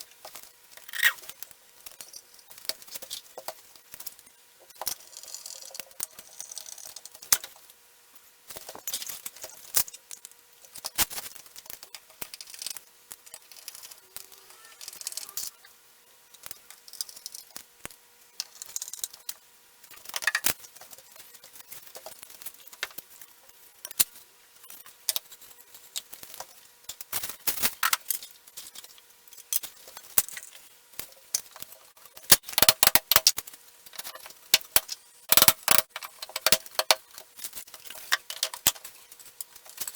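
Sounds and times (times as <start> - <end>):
clicks and rattling of metal fittings: 33.9 - 39.9.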